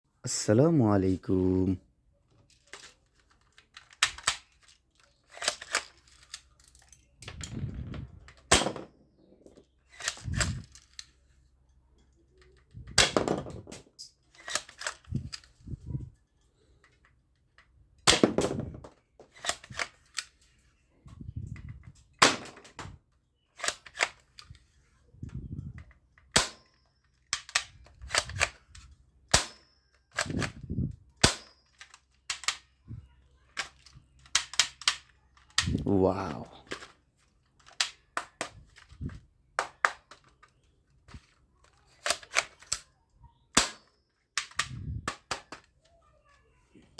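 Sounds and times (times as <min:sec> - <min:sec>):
toy gun shots cracking: 0:05.3 - 0:06.4, 0:08.4 - 0:10.6, 0:12.9 - 0:15.1, 0:18.0 - 0:20.2, 0:22.2 - 0:23.0, 0:26.3 - 0:28.6, 0:29.3 - 0:30.6, 0:31.2 - 0:32.6, 0:33.6 - 0:36.8, 0:43.5 - 0:45.6.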